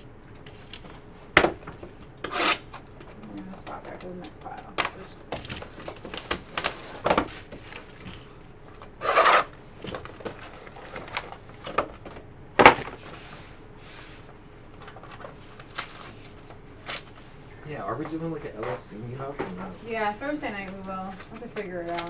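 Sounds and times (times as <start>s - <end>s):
cards sliding and rubbing: 2.3s - 2.7s, 9.0s - 9.5s.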